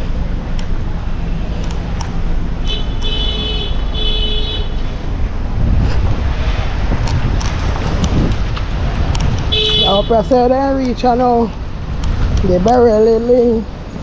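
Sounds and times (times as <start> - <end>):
road traffic rumble: 0.0 - 14.0
vehicle horn: 2.6 - 4.8, 9.5 - 10.1.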